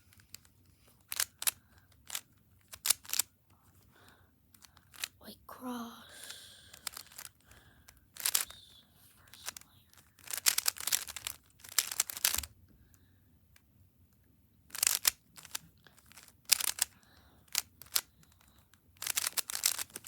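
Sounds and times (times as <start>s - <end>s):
puzzle cube clicking: 0.1s - 3.9s, 4.5s - 5.2s, 6.7s - 8.6s, 9.2s - 12.5s, 14.7s - 20.0s.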